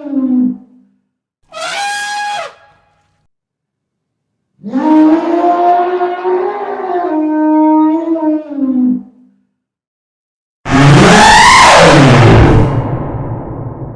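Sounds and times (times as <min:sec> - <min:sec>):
elephant trumpeting: 0:01.5 - 0:03.1.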